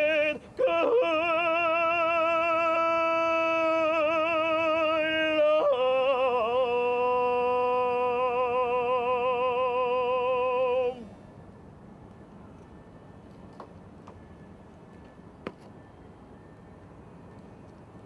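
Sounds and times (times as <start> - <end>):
person singing with vibrato: 0.0 - 11.2.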